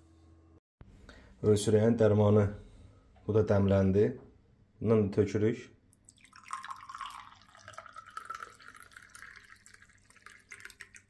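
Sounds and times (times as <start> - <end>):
liquid dripping: 5.9 - 11.0
liquid pouring into vessel: 5.9 - 11.0.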